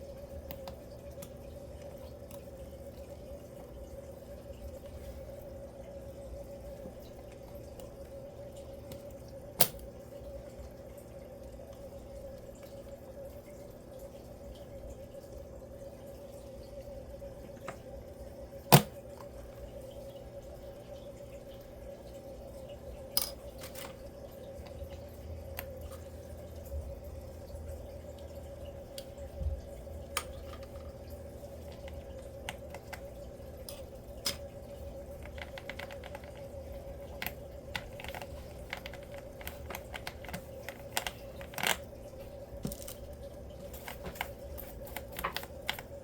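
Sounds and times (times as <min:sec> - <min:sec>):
steady hum: 0:00.0 - 0:46.0.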